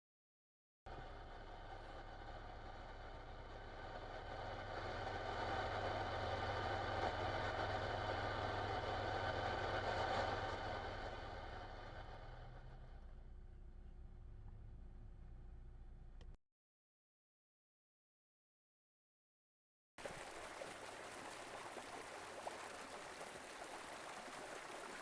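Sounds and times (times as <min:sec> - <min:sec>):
engine hum: 0:00.9 - 0:16.4.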